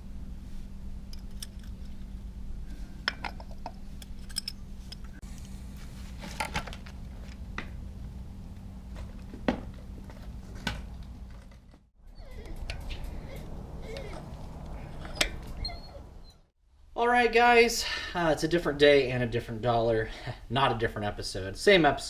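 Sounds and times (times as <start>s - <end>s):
steady low hum: 0.0s - 21.6s
metal parts clicking and clinking: 1.1s - 2.0s, 3.1s - 5.2s, 12.4s - 15.7s.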